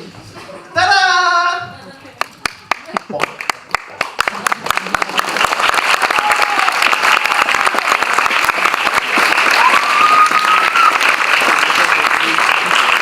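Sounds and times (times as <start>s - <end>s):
audience applauding: 2.2s - 13.0s.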